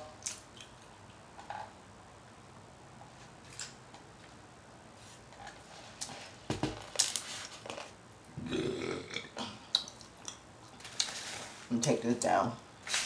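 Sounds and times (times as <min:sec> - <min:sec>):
burp: 0:08.4 - 0:09.5.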